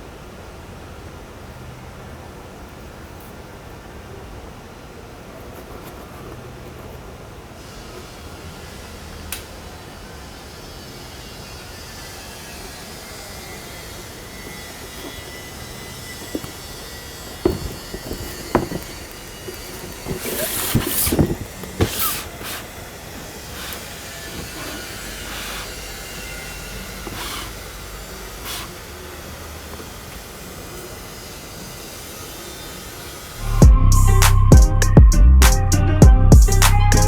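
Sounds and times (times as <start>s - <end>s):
packaging rustling: 14.2s - 26.0s.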